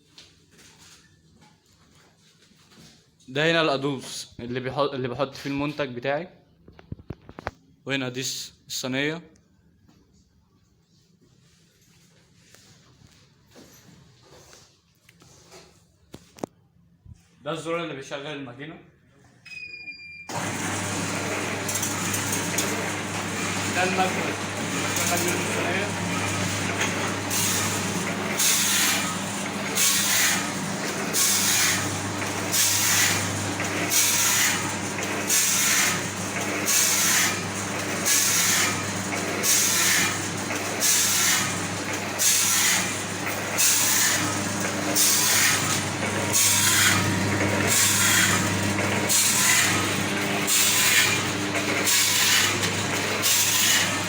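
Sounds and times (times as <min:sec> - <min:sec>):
packing machine hum: 0:20.3 - 0:54.0.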